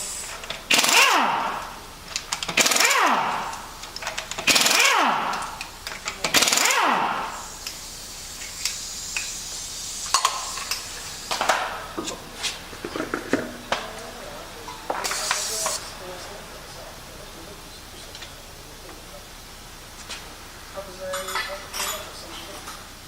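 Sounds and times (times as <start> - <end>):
air hiss: 0.0 - 16.2
air impact wrench rattling: 0.0 - 16.2.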